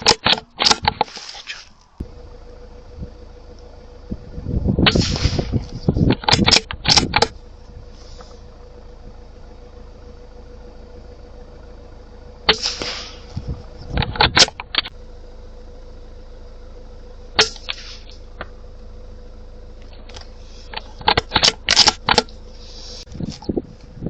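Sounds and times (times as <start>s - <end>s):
suppressed rifle shots: 12.5s - 13.3s, 17.4s - 18.2s.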